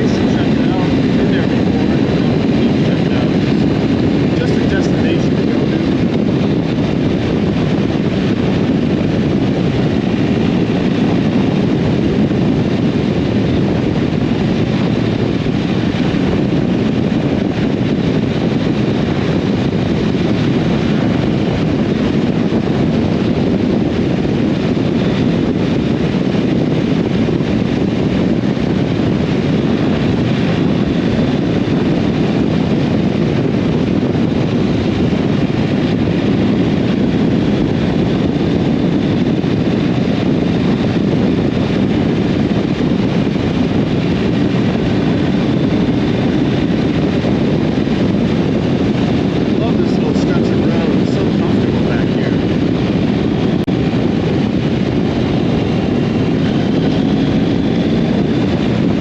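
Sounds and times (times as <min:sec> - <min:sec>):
wind noise on microphone: 0:00.0 - 0:59.0.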